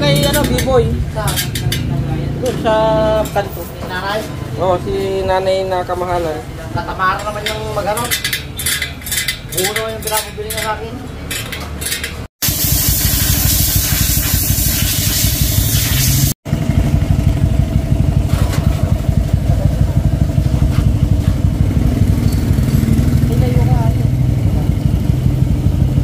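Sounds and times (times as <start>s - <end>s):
motorcycle engine running: 12.4s - 26.0s.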